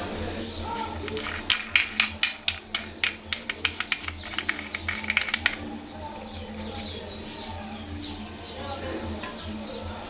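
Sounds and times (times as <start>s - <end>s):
sharp clicks of hard objects: 1.0s - 7.1s.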